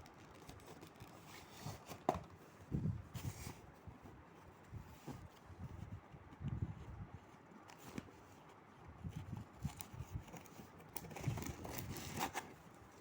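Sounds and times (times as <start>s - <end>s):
packaging rustling: 9.7s - 13.0s.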